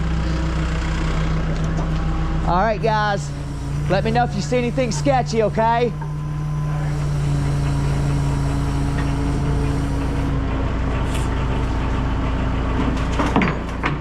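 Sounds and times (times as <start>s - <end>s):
diesel engine running: 0.0s - 14.0s
second steady tone: 3.3s - 10.3s.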